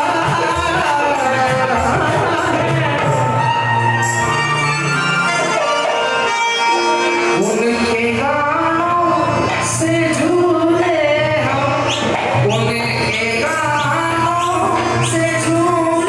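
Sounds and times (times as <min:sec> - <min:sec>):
held instrumental tones: 0:00.0 - 0:16.0
person singing ornamented lines: 0:07.4 - 0:16.0.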